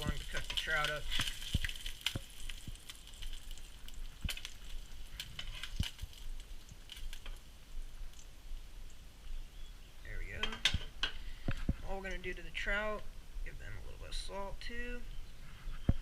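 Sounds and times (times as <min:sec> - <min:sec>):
fish sizzling in hot oil: 0:00.0 - 0:09.8.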